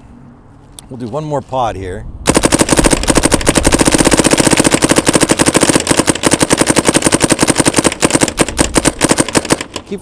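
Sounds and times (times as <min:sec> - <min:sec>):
paintball marker firing rapidly: 0:02.3 - 0:10.0.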